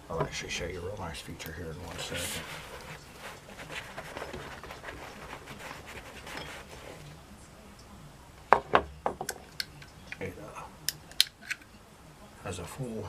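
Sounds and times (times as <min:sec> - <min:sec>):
faint rustling: 0:01.8 - 0:07.3.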